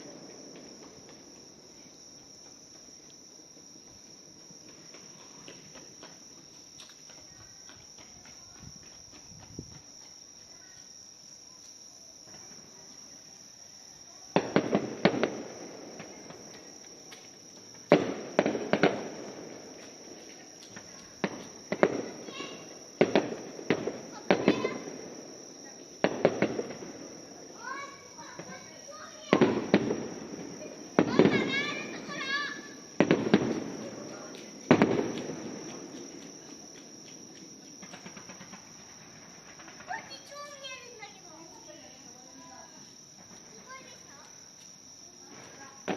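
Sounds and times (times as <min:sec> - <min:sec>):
fireworks bangs: 0:00.0 - 0:06.3, 0:14.1 - 0:44.3, 0:45.2 - 0:45.9
fireworks crackling: 0:00.0 - 0:45.9
insect trill: 0:00.0 - 0:45.9.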